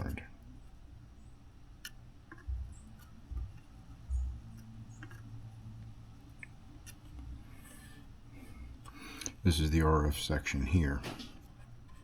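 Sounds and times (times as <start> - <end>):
faint clicks and taps: 1.8 - 7.3.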